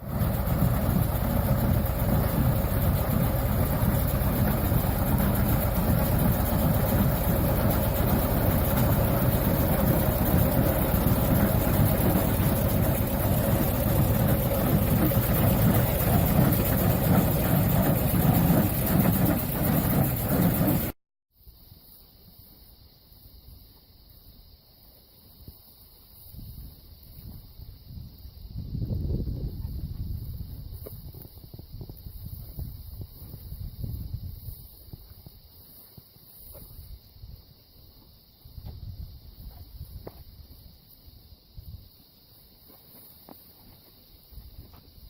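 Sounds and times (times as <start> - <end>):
vehicle engine running: 0.0 - 21.0
wind rumble on microphone: 26.3 - 35.5, 38.4 - 40.7.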